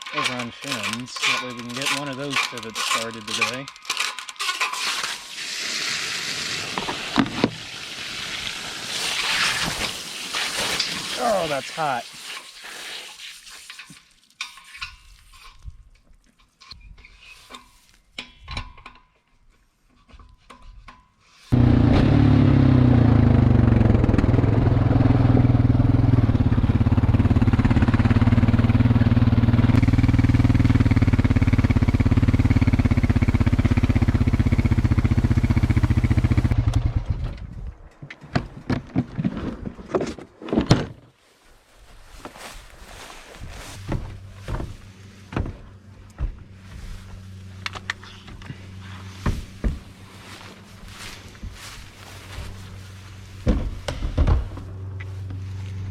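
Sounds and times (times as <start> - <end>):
handling clicks and knocks: 0.0 - 4.9, 47.5 - 50.0
engine running steadily: 21.5 - 37.5, 43.4 - 55.9.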